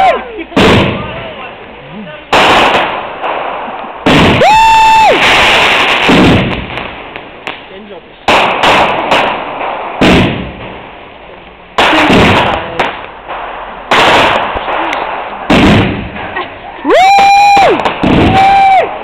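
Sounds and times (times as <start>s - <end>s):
fireworks bangs with echo: 0.0s - 19.0s.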